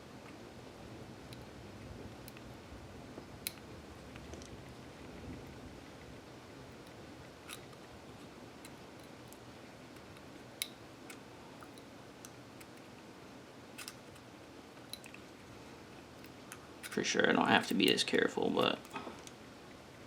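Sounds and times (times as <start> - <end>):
faint room hiss: 0.0 - 20.0
hand tool clicks and scrapes: 16.2 - 17.0, 17.6 - 19.4.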